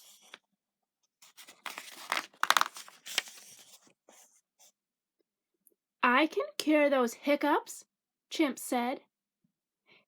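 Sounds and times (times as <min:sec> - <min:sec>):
book page turning: 0:01.2 - 0:04.4.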